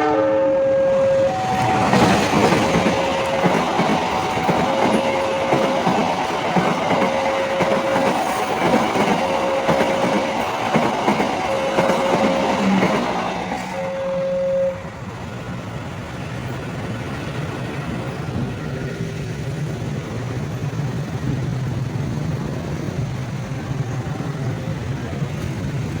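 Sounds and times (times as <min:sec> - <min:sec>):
steady tone: 0:08.5 - 0:15.2.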